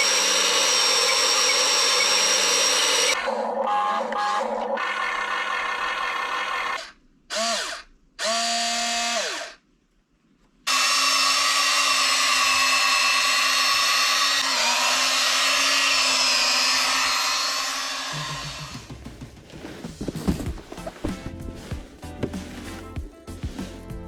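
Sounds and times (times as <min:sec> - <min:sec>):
electric motors whining: 0:00.0 - 0:06.8, 0:10.7 - 0:18.7.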